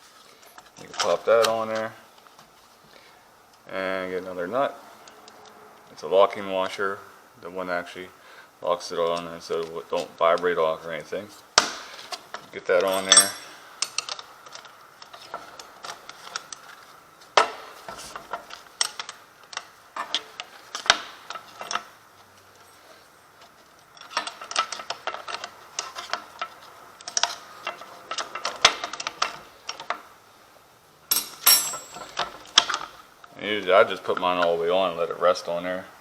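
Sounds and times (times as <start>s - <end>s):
small metal parts clicking and rattling: 11.9s - 30.0s, 31.1s - 33.4s.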